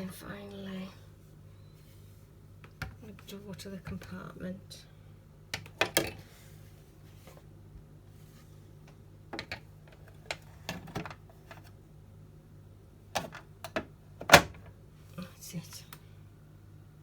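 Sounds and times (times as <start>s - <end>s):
faint low hum: 0.0s - 17.0s
plastic door clicks and knocks: 13.2s - 14.7s.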